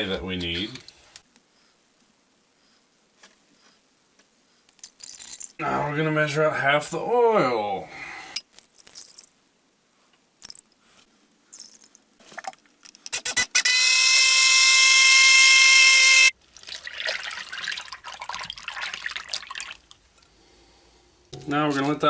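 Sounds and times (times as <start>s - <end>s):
liquid pouring: 16.4s - 20.3s.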